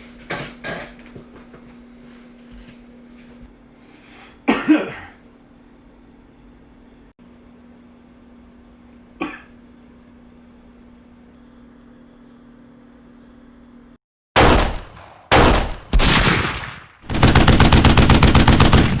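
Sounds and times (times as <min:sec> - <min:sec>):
faint steady hum: 0:00.0 - 0:16.0
loud single gunshots: 0:14.4 - 0:17.7
rapid automatic gunfire: 0:14.4 - 0:19.0.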